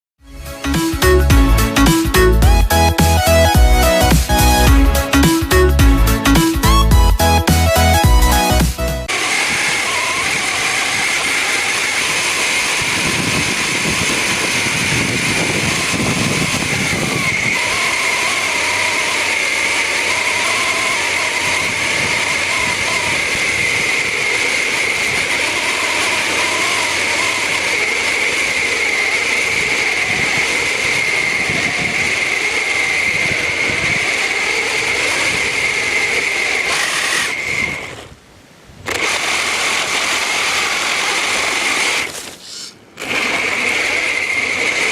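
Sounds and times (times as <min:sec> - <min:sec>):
electric motor high whine: 0:00.3 - 0:44.9
rushing ground noise: 0:09.0 - 0:38.2.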